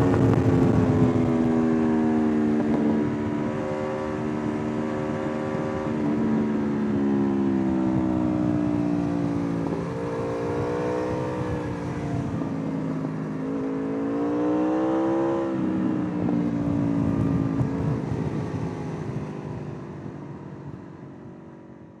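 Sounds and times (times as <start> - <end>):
motorcycle engine revving: 8.0 - 19.3.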